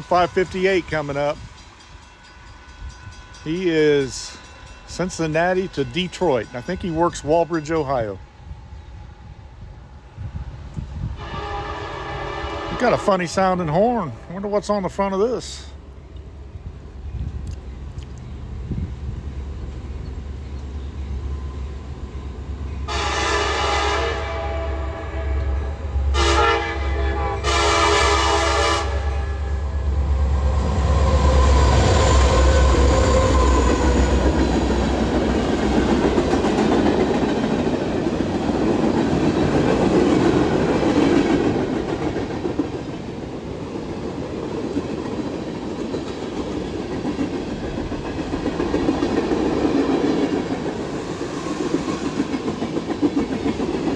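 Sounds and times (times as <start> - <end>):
diesel locomotives rumbling past: 0.0 - 53.9
locomotive horn blasts: 11.2 - 13.6, 22.9 - 29.7
clickety-clack of rail joints: 31.6 - 53.9.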